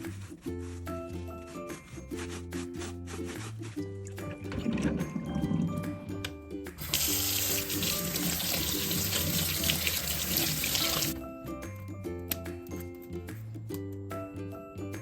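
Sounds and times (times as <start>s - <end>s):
background music: 0.0s - 15.0s
tap water running into sink: 6.8s - 11.2s.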